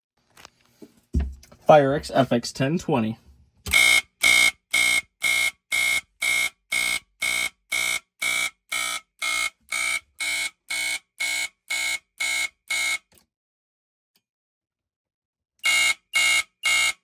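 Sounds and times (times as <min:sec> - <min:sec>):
smoke alarm high-pitched beeps: 0:03.7 - 0:13.0, 0:15.6 - 0:17.0.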